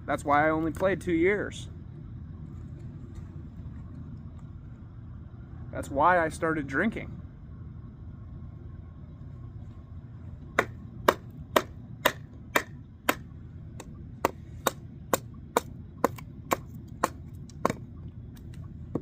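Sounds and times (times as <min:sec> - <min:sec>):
chopping wood strikes: 0:10.6 - 0:17.8.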